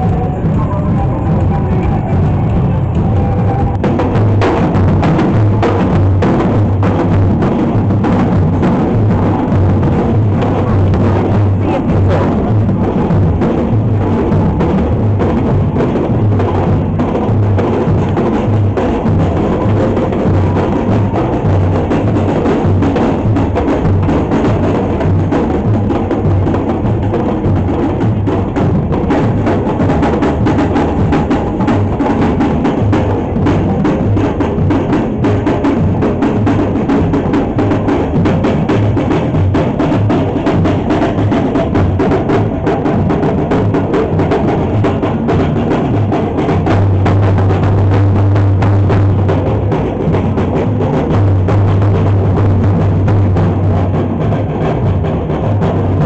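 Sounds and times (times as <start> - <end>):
loud salsa music: 0.0 - 6.9, 8.8 - 12.8.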